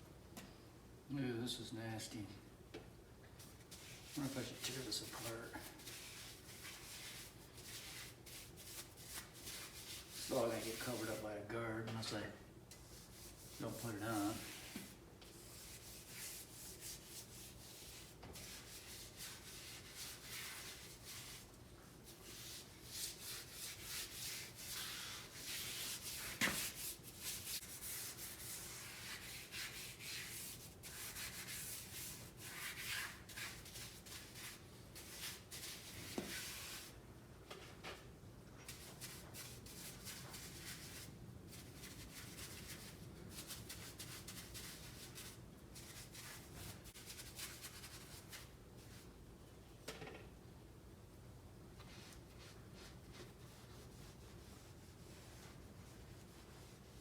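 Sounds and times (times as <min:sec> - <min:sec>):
hand scrubbing strokes: 0:03.4 - 0:11.3, 0:12.7 - 0:37.0, 0:38.7 - 0:48.9.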